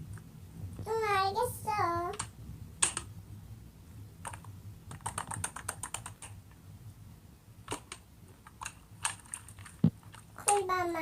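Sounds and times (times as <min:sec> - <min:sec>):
faint low hum: 0:00.0 - 0:11.0
keyboard key clicks: 0:02.1 - 0:03.1, 0:07.7 - 0:10.6.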